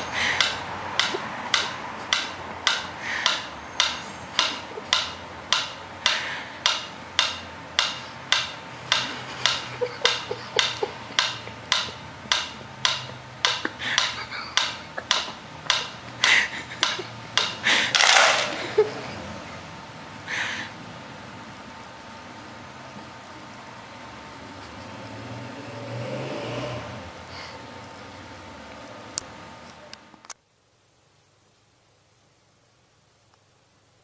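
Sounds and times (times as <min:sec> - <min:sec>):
sharp taps: 0:00.3 - 0:18.6.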